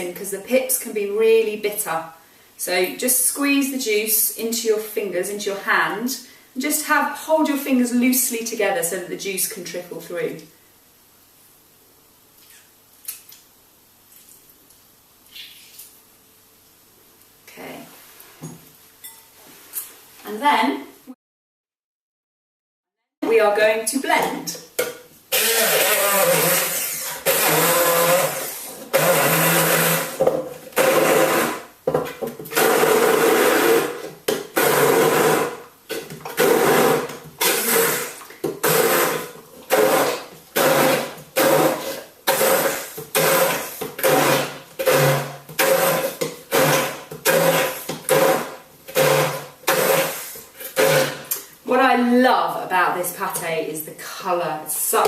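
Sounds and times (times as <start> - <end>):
blender pulsing: 25.3 - 30.2, 30.8 - 31.7, 32.5 - 35.6, 36.3 - 51.4.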